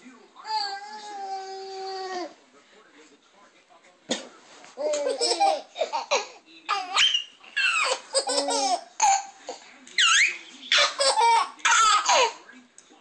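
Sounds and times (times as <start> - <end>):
babies laughing: 4.8 - 12.4.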